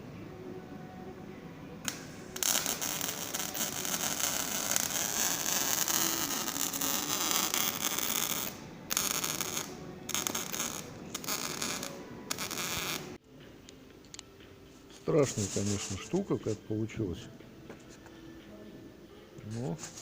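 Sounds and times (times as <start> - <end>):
electric welding crackling hiss: 1.8 - 13.2, 15.1 - 16.6.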